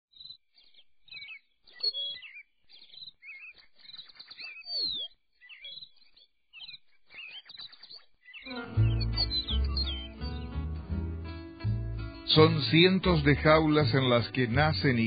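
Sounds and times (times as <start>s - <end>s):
finches chirping and twittering: 0.1s - 10.8s.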